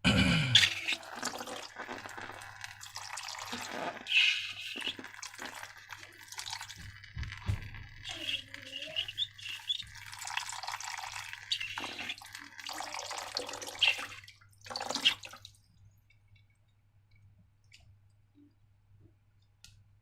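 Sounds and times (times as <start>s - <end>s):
slime splashes: 0.6s - 15.6s
slime pouring and dripping: 0.6s - 17.9s.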